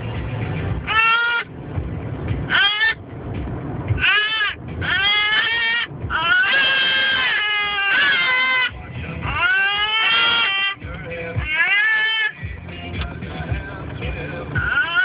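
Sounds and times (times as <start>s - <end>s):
high-pitched wailing cries: 0.9s - 1.5s, 2.5s - 3.0s, 4.0s - 10.8s, 11.4s - 12.4s, 14.6s - 15.0s.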